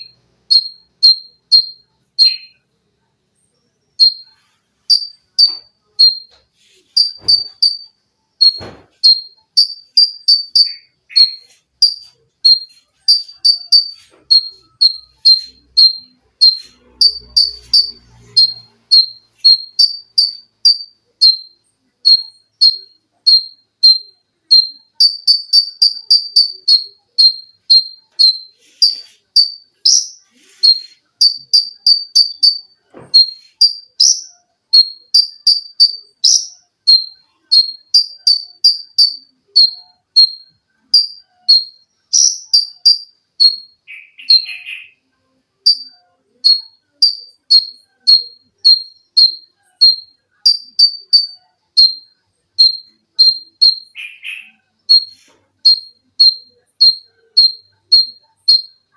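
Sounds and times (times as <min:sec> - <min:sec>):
bird singing sharp high chips: 0:00.0 - 0:02.6, 0:04.0 - 0:45.0, 0:45.7 - 0:58.9.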